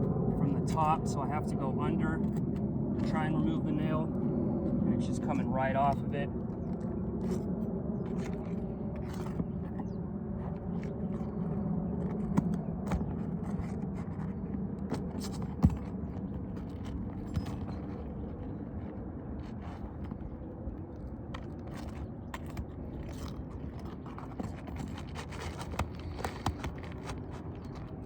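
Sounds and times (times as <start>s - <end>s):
scraping under roof shingles: 6.6s - 28.0s.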